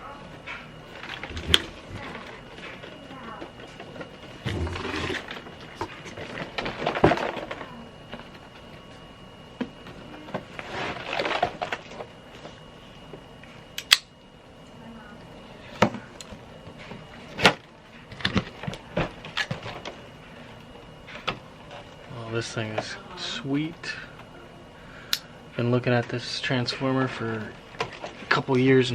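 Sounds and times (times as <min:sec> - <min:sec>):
plastic packaging rustling: 0:00.7 - 0:08.9, 0:09.8 - 0:12.6.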